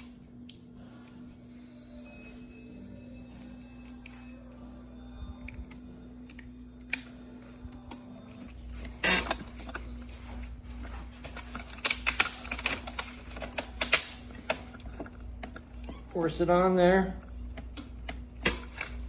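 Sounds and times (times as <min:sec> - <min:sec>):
aluminum sheet crinkling and clicking: 0:07.6 - 0:16.1.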